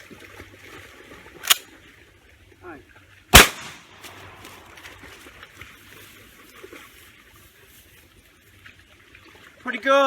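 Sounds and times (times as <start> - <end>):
faint water sounds: 0.0 - 10.0
shotgun blast: 3.3 - 4.1.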